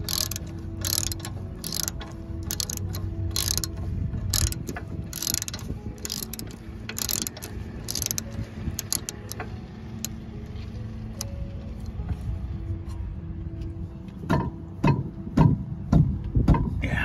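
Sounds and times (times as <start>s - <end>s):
ratchet wrench clicking: 0.0s - 10.2s.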